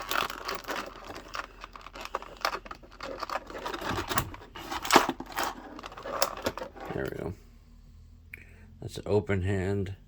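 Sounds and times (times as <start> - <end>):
plastic parts rustling and clicking: 0.0 - 7.2.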